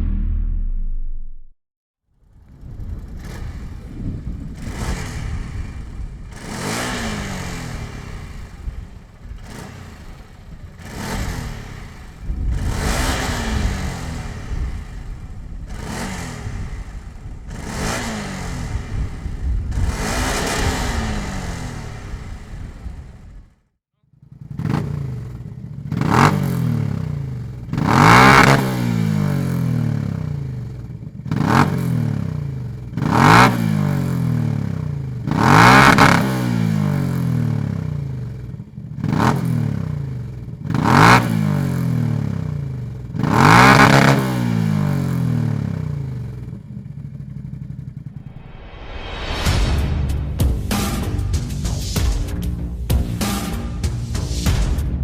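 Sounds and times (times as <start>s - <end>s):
atv engine revving: 2.2s - 23.6s, 24.2s - 48.2s.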